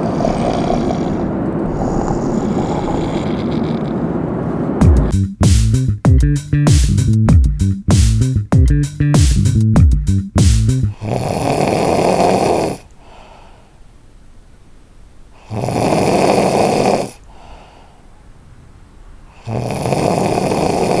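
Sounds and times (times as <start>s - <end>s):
person snoring loudly: 0.0s - 4.0s, 10.9s - 12.9s, 15.5s - 17.2s, 19.4s - 21.0s
quiet breathing: 0.0s - 4.8s, 10.9s - 14.0s, 15.3s - 18.5s.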